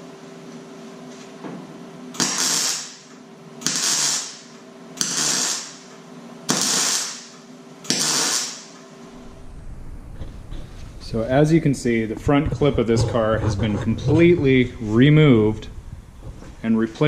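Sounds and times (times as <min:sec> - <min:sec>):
steady low hum: 0:00.0 - 0:17.0
welder crackling hiss: 0:02.2 - 0:05.9, 0:06.5 - 0:08.8.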